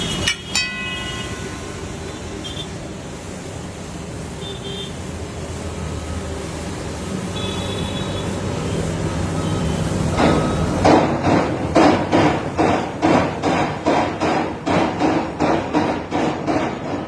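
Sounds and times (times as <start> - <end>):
metal spatula striking griddle: 0.2 - 1.8.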